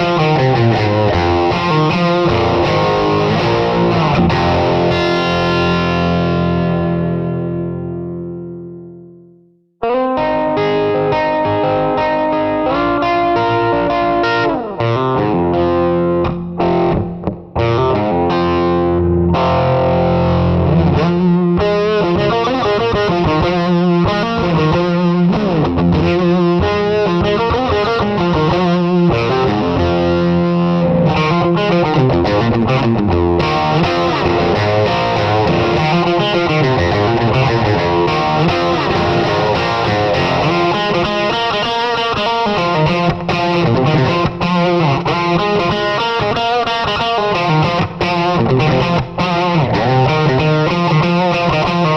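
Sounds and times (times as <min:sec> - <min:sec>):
distorted electric guitar music: 0:00.0 - 0:51.9.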